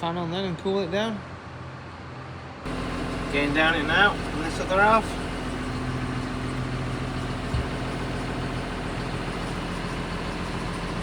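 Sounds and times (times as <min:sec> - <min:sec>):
farm machinery engine droning: 0:02.7 - 0:11.0.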